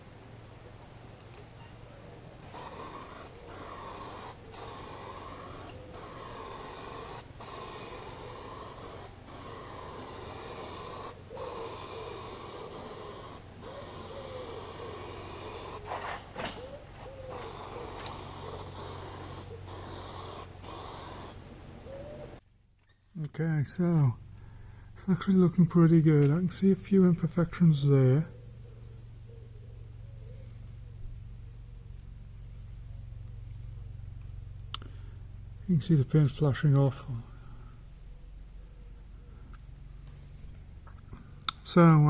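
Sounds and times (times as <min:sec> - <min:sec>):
low hum: 0:00.0 - 0:41.7
spray paint hissing: 0:02.4 - 0:16.1, 0:17.3 - 0:21.5.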